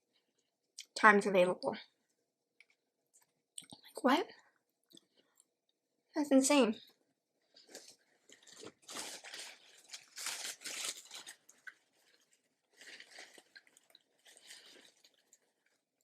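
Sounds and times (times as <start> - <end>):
crunchy bites and chewing: 7.6 - 15.8.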